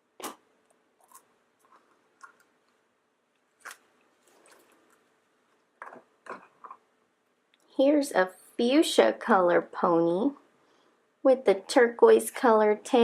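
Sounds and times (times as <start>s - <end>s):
plastic egg clicks and rustles: 0.6s - 6.8s.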